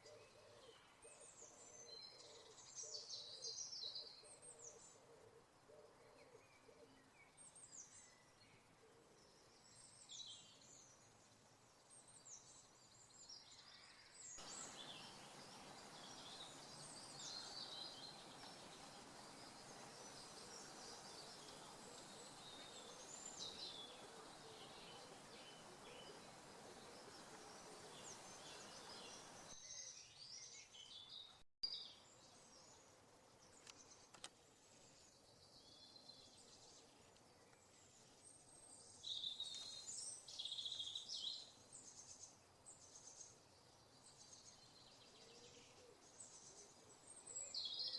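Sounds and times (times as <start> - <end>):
small birds singing: 0.0 - 47.9
steady hiss: 14.4 - 29.6.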